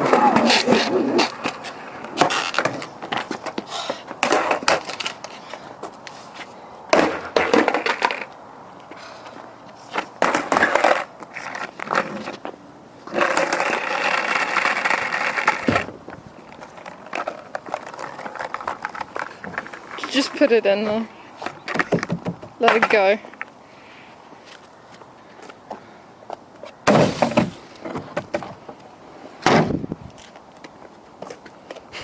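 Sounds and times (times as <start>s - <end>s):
wheels rolling: 0.0s - 23.5s.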